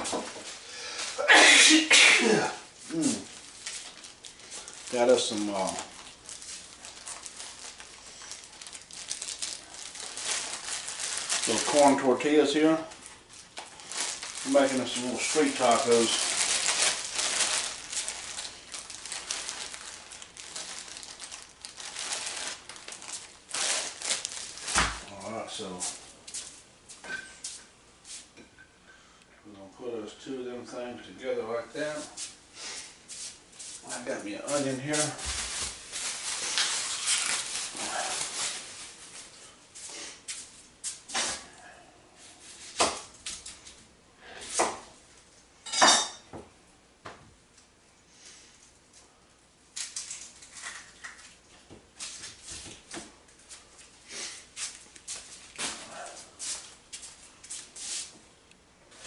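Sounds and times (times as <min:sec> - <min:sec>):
papery onion rustling: 0:00.0 - 0:01.2, 0:02.7 - 0:26.6, 0:31.8 - 0:41.5, 0:49.8 - 0:58.2
packaging crinkling: 0:02.8 - 0:26.0, 0:33.8 - 0:39.5, 0:49.8 - 0:51.4.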